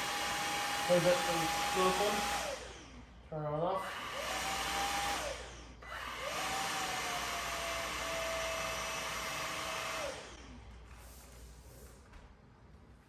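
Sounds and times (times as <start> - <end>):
cordless vacuum motor whine: 0.0 - 2.9, 3.8 - 10.5.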